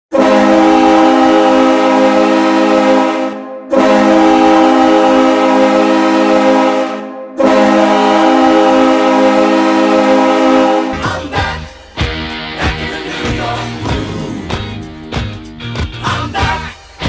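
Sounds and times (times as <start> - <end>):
hockey goal horn blasts: 0.1 - 10.9.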